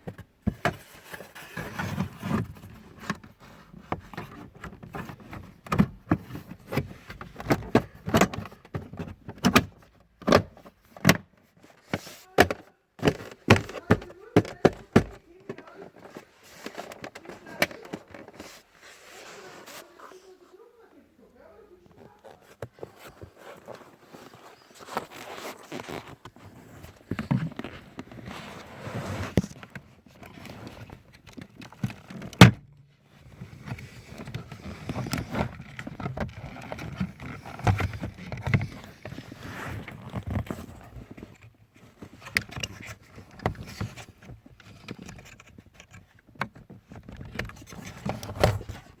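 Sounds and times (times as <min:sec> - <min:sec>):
handling knocks and rustles: 0:00.0 - 0:49.0.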